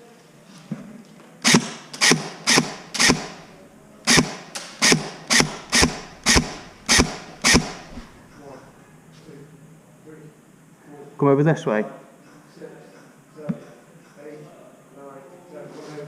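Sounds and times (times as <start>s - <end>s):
airsoft gun shots: 1.4s - 8.3s.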